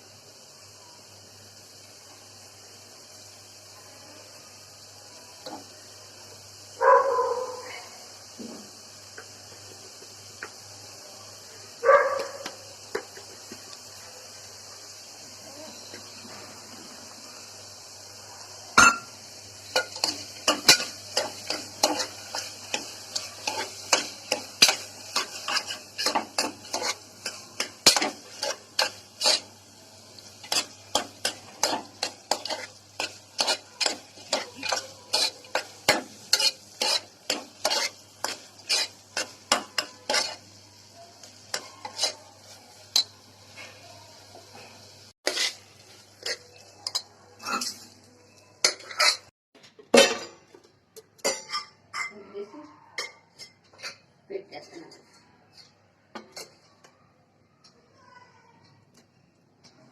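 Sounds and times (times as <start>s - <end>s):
faint steady sizzle: 0.0s - 49.3s
spoon stirring and scraping pot: 19.7s - 29.6s, 30.4s - 40.6s, 41.2s - 43.8s, 44.5s - 49.3s, 53.0s - 56.8s.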